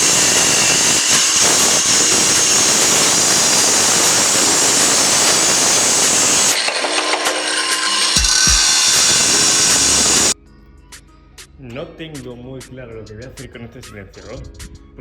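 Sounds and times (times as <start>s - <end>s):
power tool cutting sheet metal: 0.0s - 10.4s.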